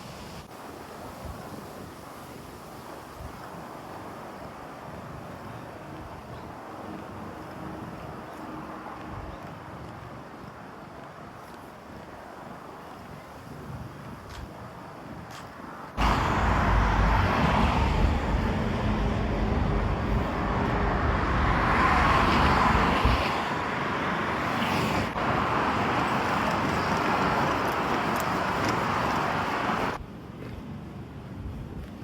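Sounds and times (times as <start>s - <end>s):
wind rumble on microphone: 0.0s - 32.0s
cars passing close by: 15.9s - 30.0s.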